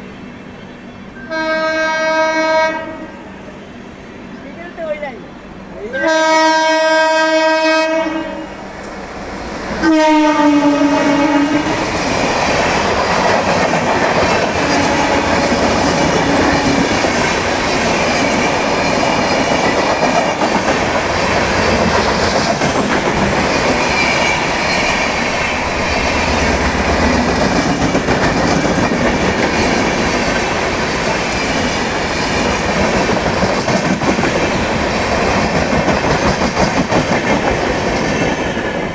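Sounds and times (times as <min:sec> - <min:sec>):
train rolling past: 0:00.0 - 0:38.9
train horn blasts: 0:01.2 - 0:03.4, 0:06.0 - 0:08.6, 0:09.8 - 0:11.8, 0:14.6 - 0:16.8.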